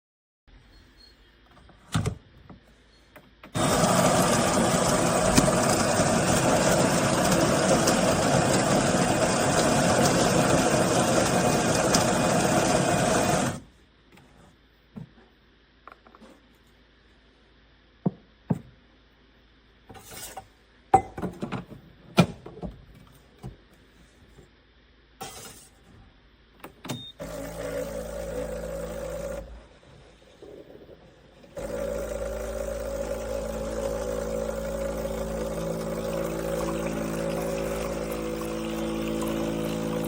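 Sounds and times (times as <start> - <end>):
steady machine hum: 27.3 - 40.0.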